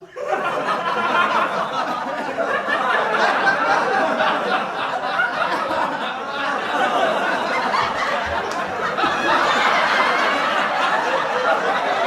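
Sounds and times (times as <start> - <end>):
crowd chattering: 0.0 - 12.0
people laughing: 0.0 - 12.0.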